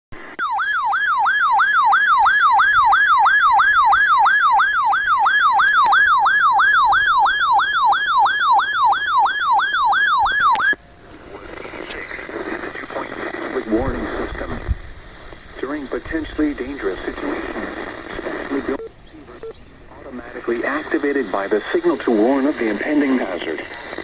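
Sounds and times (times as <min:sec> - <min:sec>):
warbling electronic alert tone: 0:00.4 - 0:10.8.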